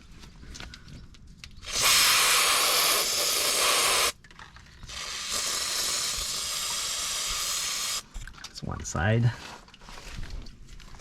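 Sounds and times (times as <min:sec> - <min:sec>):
aerosol spray hissing: 0:01.6 - 0:04.2, 0:04.9 - 0:08.0.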